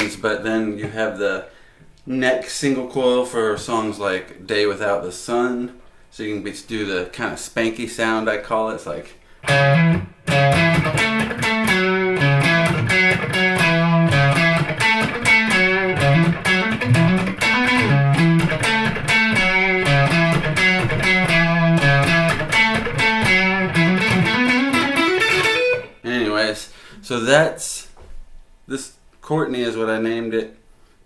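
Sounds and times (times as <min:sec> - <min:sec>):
electric guitar notes and chords: 0:09.4 - 0:26.0.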